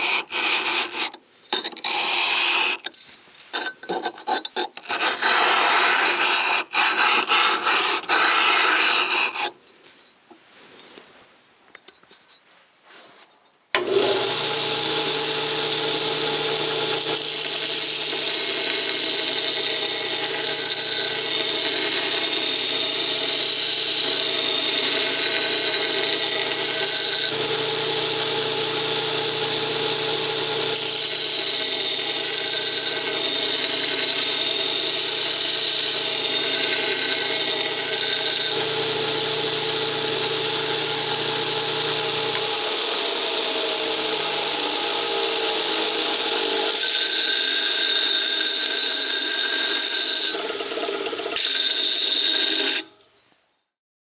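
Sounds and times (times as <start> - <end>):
power tool grinding sharpening stone: 4.0 - 9.5, 13.8 - 52.9.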